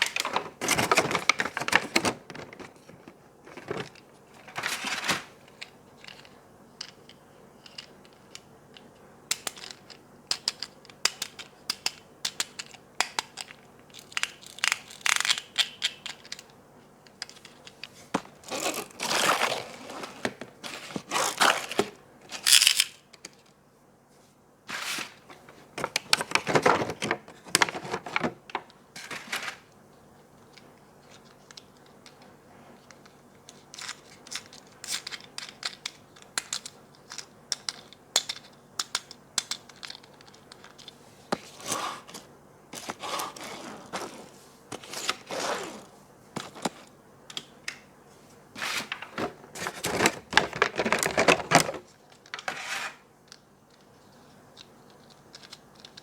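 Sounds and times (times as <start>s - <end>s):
plastic and cardboard crinkling: 0.0s - 6.3s, 24.7s - 29.7s, 48.5s - 53.0s.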